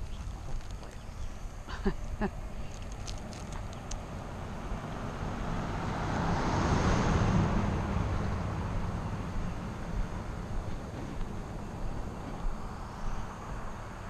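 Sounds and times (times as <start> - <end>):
car passing by: 3.2 - 14.0.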